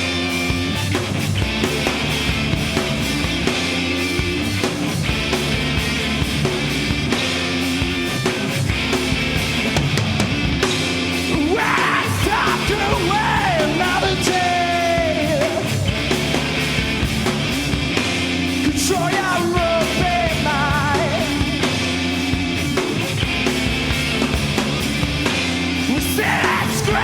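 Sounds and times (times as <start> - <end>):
rock band playing live: 0.0 - 27.0
singer yelling and singing: 11.3 - 16.4, 18.5 - 21.7, 25.7 - 27.0.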